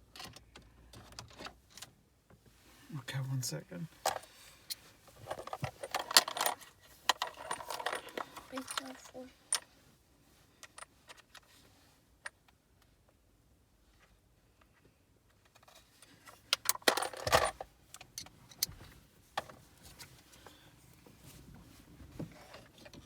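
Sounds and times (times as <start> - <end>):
screwdriver and screws clinking: 5.4 - 9.6.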